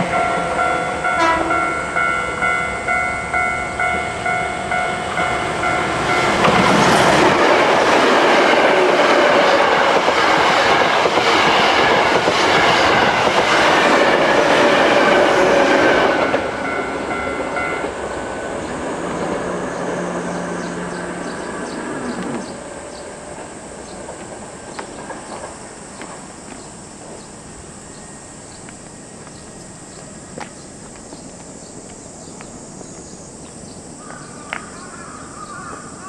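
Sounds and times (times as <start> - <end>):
level crossing bell clanging: 0.0 - 6.8
train passing with wheel clacks: 0.0 - 36.0.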